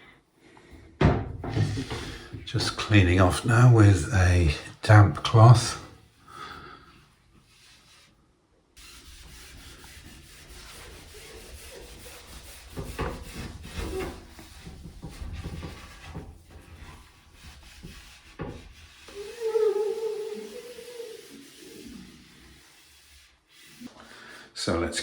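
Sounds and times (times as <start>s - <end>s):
cloth rubbing on glass door: 1.5s - 8.2s, 8.8s - 24.0s.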